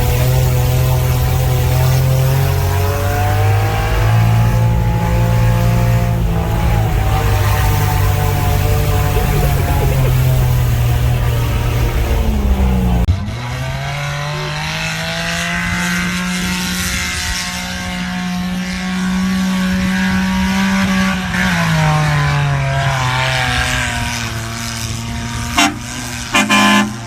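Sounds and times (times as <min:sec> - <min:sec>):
small truck engine under load: 0:00.0 - 0:13.1
train horn toot: 0:25.5 - 0:27.0.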